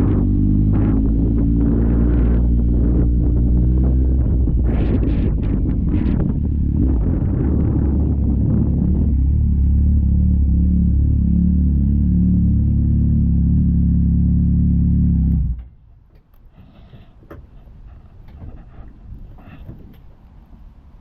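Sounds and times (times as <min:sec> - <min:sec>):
wind buffeting microphone: 0:00.0 - 0:10.5, 0:17.2 - 0:21.0.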